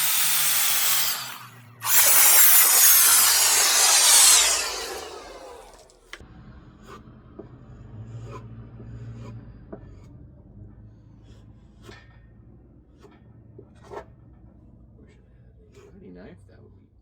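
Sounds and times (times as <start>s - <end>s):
filing on wood: 8.1s - 10.1s, 12.9s - 14.2s, 15.0s - 16.1s.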